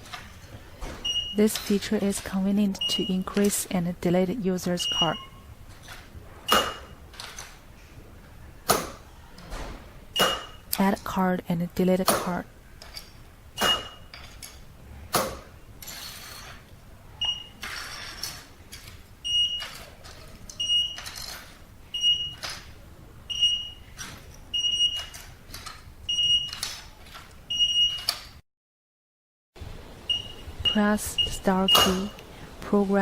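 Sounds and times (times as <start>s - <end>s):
keypad beeps: 1.0s - 3.6s, 4.7s - 5.4s, 6.5s - 7.0s, 10.2s - 10.7s, 13.6s - 14.2s, 17.2s - 17.7s, 19.2s - 21.3s, 21.9s - 22.6s, 23.3s - 25.2s, 26.1s - 26.8s, 27.5s - 28.2s, 30.1s - 32.2s.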